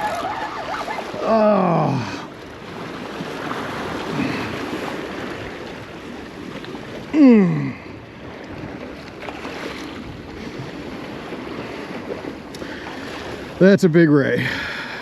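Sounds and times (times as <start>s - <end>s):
surf: 0.0s - 15.0s
wind: 0.0s - 15.0s
man groaning: 1.2s - 2.2s, 7.2s - 7.8s.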